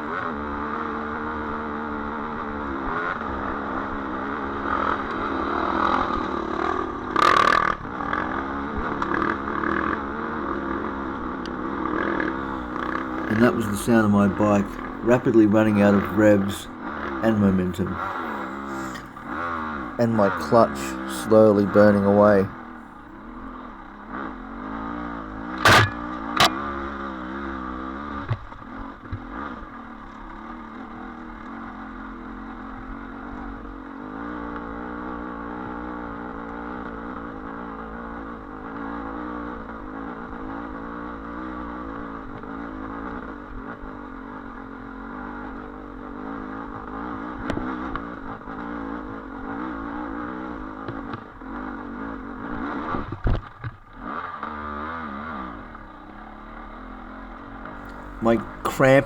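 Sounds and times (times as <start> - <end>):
dirt bike engine revving high: 25.6 - 26.6
sharp knocks: 25.6 - 26.6.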